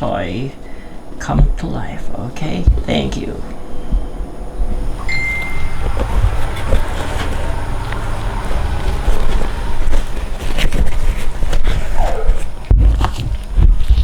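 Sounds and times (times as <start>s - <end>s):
microphone handling rumble: 1.2s - 14.0s
plastic packaging rustling: 4.8s - 14.0s.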